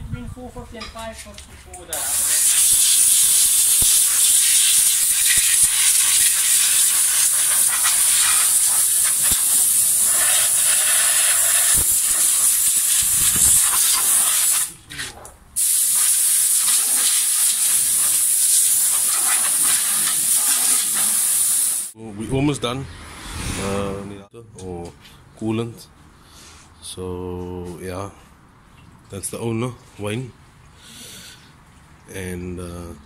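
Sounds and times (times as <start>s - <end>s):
loud high hiss: 2.0s - 14.8s, 15.6s - 22.0s.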